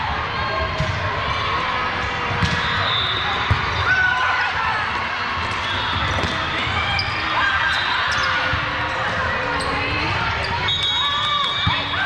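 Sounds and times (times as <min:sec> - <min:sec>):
murmur of crowd in hall: 0:00.0 - 0:12.0
volleyballs bouncing on gym floor: 0:01.9 - 0:02.8.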